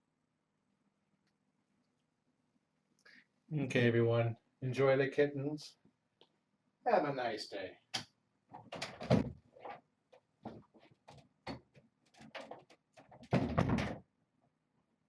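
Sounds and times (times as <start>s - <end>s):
short knocks and clatters: 8.5s - 9.8s, 10.4s - 14.1s
loud thump: 13.3s - 14.0s.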